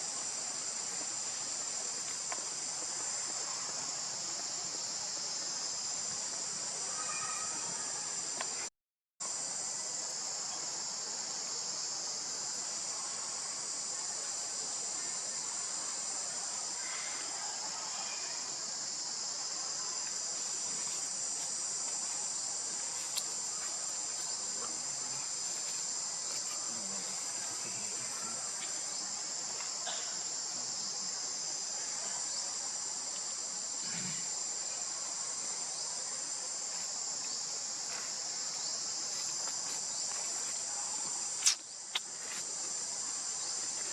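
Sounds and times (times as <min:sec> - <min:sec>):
high-pitched insect chorus: 0:00.0 - 0:43.9
sharp click: 0:41.4 - 0:42.1.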